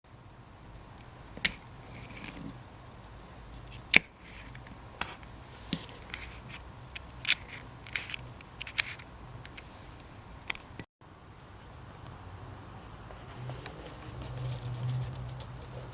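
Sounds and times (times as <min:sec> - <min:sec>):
light scraping: 0:13.1 - 0:15.9.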